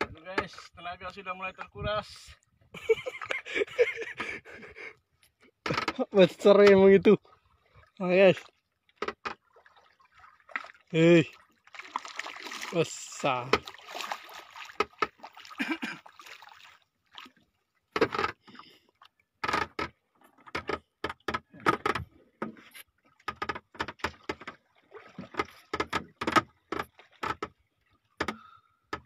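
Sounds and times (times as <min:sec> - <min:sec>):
water splashing: 0:07.0 - 0:18.8, 0:24.0 - 0:25.9.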